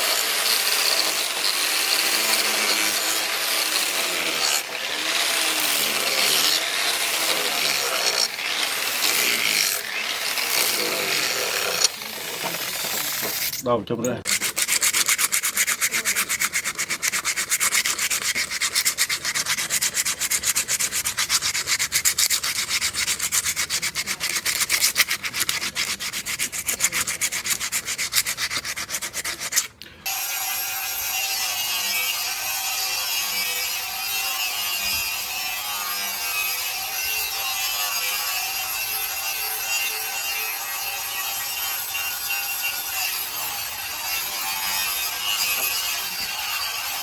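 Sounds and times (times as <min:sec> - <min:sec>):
grinding wheel whine: 0:00.0 - 0:13.5, 0:30.1 - 0:47.0
abrasive rubbing on steel blade: 0:00.0 - 0:13.6, 0:14.3 - 0:29.8, 0:31.0 - 0:47.0.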